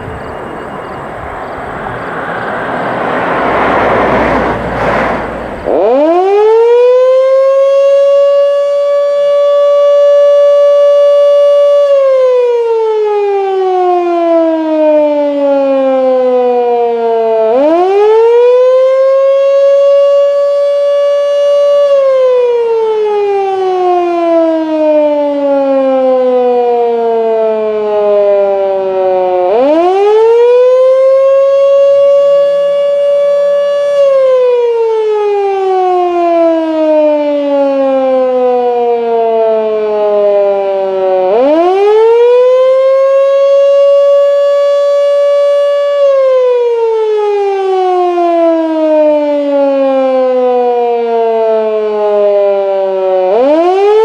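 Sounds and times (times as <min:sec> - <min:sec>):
fire siren wailing: 0:00.0 - 0:54.0.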